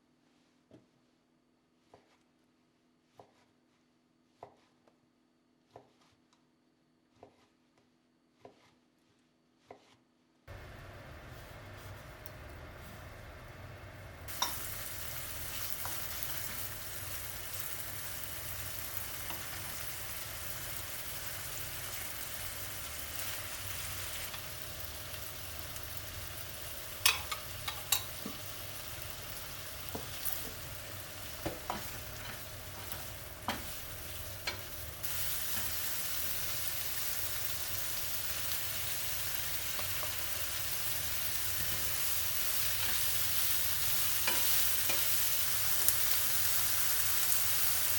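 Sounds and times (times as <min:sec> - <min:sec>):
food sizzling in a frying pan: 0:14.2 - 0:47.9.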